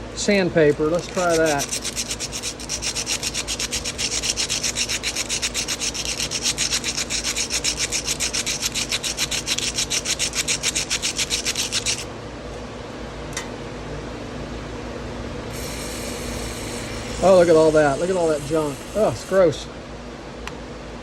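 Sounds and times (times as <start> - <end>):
sandpaper rasping on metal: 0.8 - 12.1, 15.5 - 19.4.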